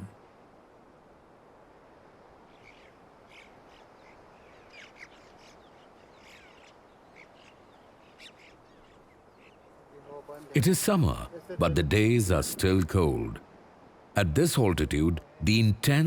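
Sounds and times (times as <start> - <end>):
background air hiss: 0.0 - 2.5, 10.4 - 16.0.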